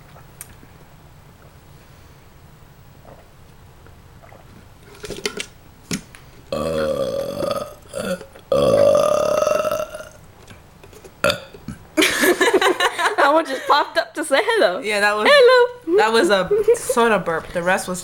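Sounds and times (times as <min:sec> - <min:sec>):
person burping: 0:06.5 - 0:10.2, 0:11.2 - 0:11.8.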